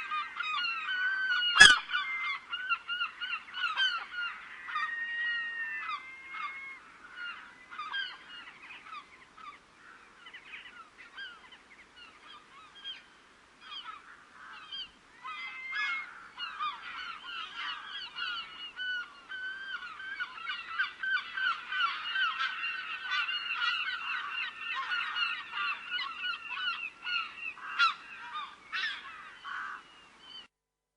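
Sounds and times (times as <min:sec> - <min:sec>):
gulls calling: 0:00.0 - 0:30.5.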